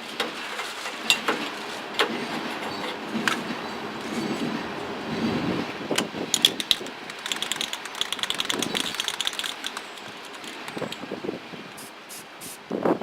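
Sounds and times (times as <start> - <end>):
hand tools clicking rapidly: 6.4 - 11.0.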